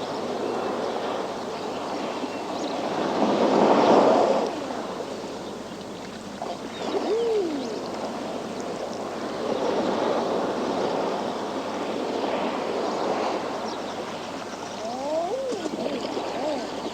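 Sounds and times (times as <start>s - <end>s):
waves washing against rocks: 2.8s - 5.3s, 6.4s - 16.9s.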